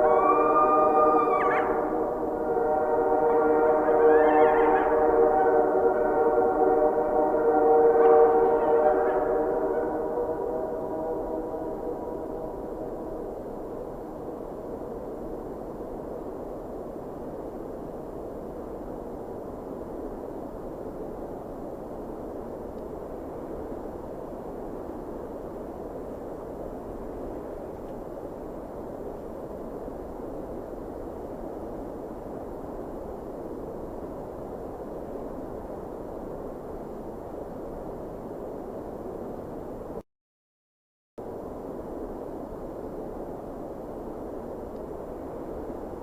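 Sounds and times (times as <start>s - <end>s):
train horn chord: 0.0s - 13.2s
train rumbling past: 0.0s - 15.0s.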